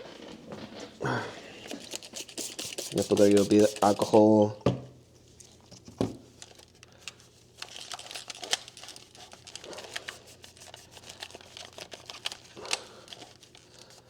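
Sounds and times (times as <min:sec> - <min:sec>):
scrubbing on plastic controller: 0:01.9 - 0:04.3.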